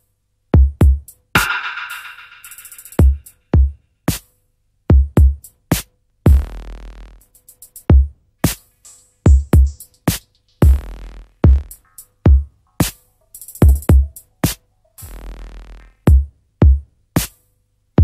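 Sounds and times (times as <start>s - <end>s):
deep kick drums: 0.6s - 2.0s, 3.0s - 3.7s, 4.9s - 5.4s, 9.3s - 9.8s, 10.6s - 11.7s
hissing hit: 1.4s - 3.2s
electronic music: 1.4s - 3.4s.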